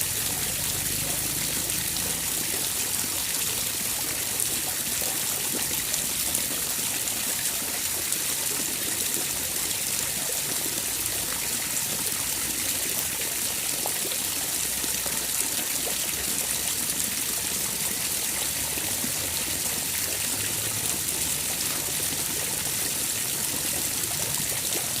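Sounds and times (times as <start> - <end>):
water trickling and splashing: 0.0 - 25.0.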